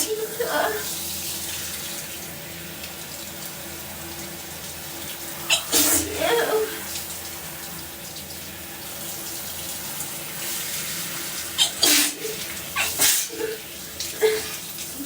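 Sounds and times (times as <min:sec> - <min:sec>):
shower water running: 0:00.0 - 0:15.0
woman sneezing: 0:05.5 - 0:06.7, 0:11.6 - 0:13.6.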